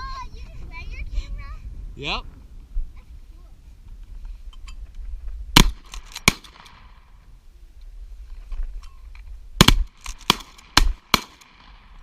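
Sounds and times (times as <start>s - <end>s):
shotgun shots with echo: 5.6s - 7.0s, 9.6s - 11.9s.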